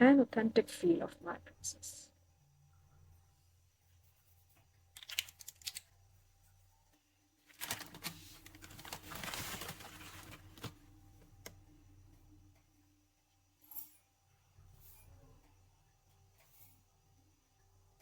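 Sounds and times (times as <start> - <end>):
small clicks: 4.9 - 5.9
clattering and rustling: 7.6 - 10.8.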